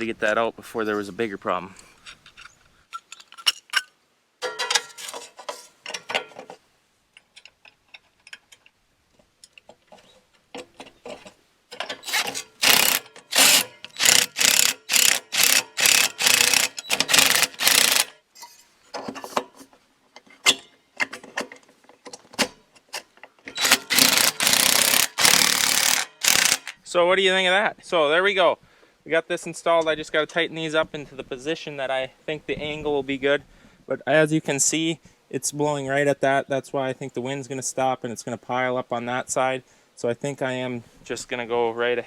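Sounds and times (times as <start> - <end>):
ratchet wrench clicking: 12.0 - 18.2, 23.6 - 26.8.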